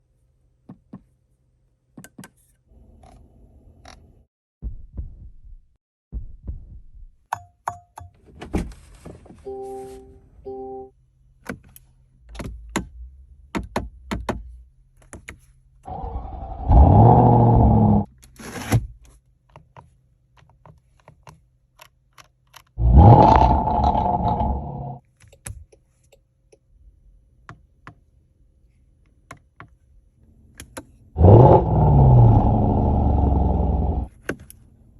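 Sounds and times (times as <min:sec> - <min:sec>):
car engine revving: 0:15.9 - 0:18.1, 0:22.8 - 0:25.0, 0:31.2 - 0:34.1.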